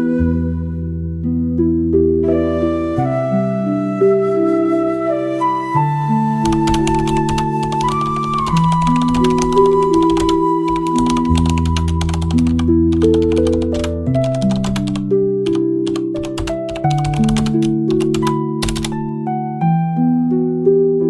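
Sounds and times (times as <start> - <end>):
background music sustained notes: 0.0 - 21.0
rapid clicking: 6.4 - 19.0.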